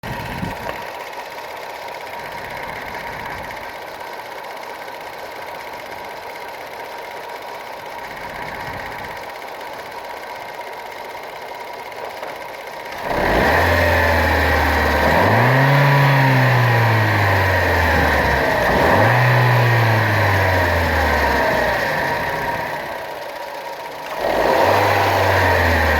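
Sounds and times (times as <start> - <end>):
car engine revving: 12.9 - 23.0, 24.0 - 25.9.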